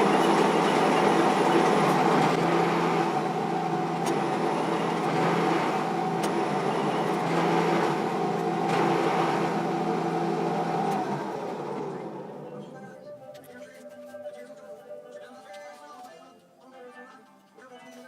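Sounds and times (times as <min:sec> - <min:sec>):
lathe humming and whining: 0:00.0 - 0:13.4.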